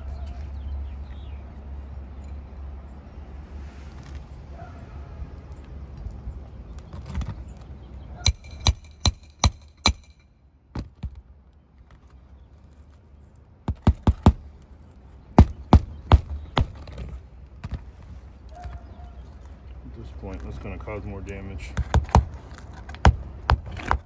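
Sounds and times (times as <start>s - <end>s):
hammer striking steel bar: 8.2s - 10.2s.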